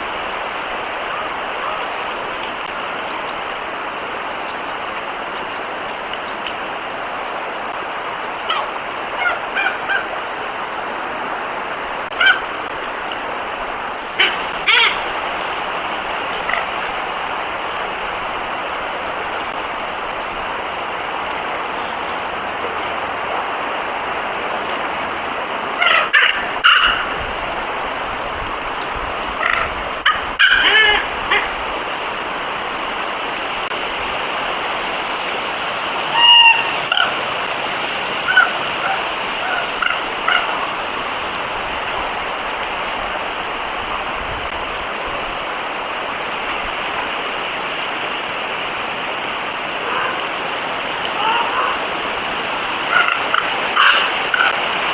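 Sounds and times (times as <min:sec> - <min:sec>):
steady outdoor hiss: 0:00.0 - 0:54.9
squeaky animal calls: 0:14.2 - 0:15.1, 0:29.4 - 0:31.5, 0:36.0 - 0:37.2, 0:52.9 - 0:54.6.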